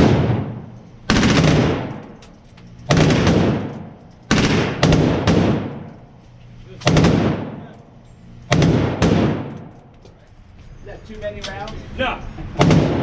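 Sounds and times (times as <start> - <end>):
automatic rifle fire bursts: 0.0 - 2.2, 2.9 - 5.9, 6.8 - 7.7, 8.5 - 9.7, 12.6 - 13.0.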